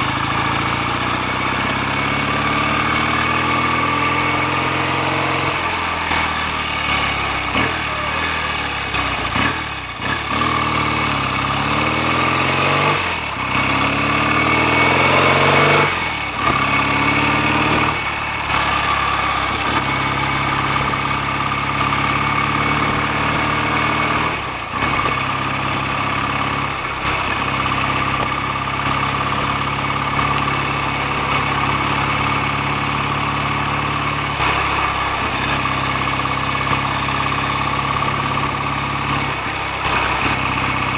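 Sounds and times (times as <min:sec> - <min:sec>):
motorcycle engine accelerating: 0:00.0 - 0:40.9.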